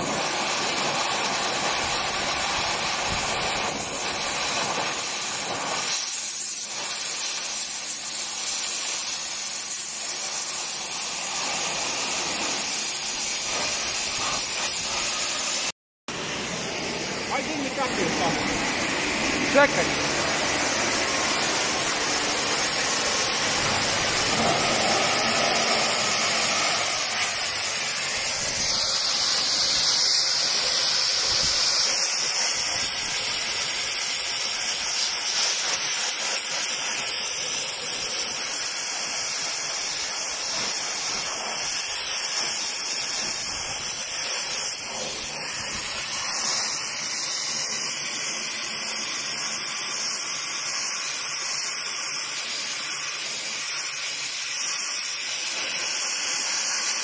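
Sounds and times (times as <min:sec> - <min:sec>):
loud even hiss: 0:00.0 - 0:57.0
small engine running: 0:15.4 - 0:50.6.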